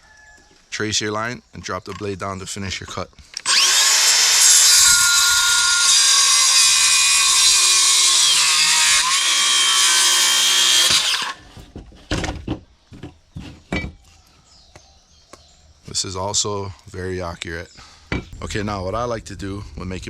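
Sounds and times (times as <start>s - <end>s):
circular saw cutting wood: 3.4s - 11.5s.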